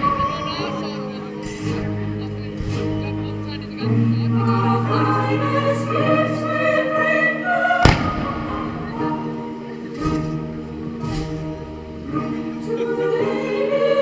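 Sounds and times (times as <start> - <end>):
choir singing held notes: 0.0 - 14.0
firework bang: 7.8 - 8.9.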